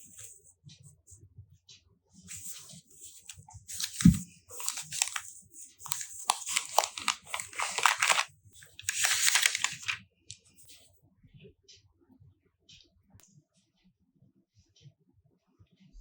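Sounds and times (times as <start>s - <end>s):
plastic packaging crinkling: 2.3s - 10.0s.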